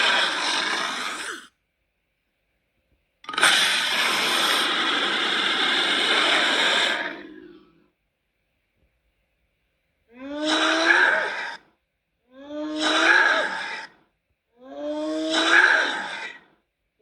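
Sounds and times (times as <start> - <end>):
breathy rasping monster vocals: 0.0 - 1.5, 3.3 - 7.8.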